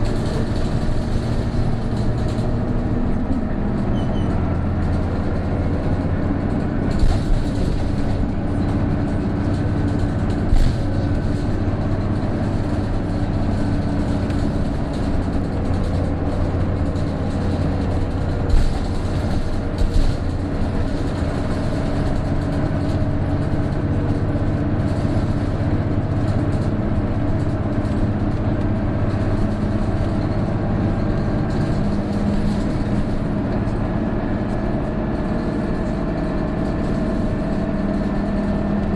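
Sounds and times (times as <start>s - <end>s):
bus engine droning with whine: 0.0s - 38.9s.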